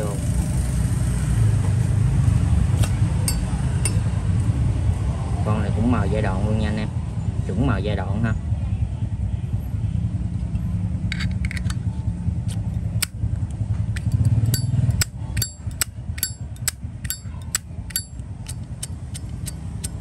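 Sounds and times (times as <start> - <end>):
low traffic rumble: 0.0 - 20.0
lighter lid clicking open and shut: 14.0 - 20.0.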